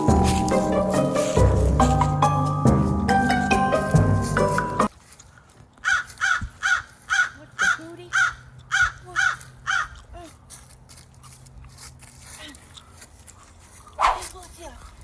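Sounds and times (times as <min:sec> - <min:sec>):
music: 0:00.0 - 0:04.9
crow cawing: 0:05.8 - 0:10.0.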